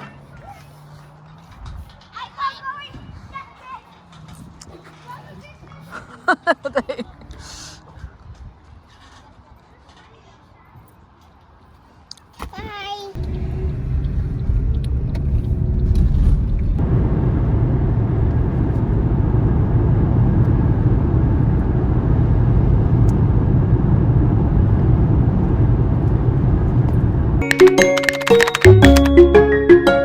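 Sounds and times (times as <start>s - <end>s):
car rumbling in motion: 13.1s - 27.4s.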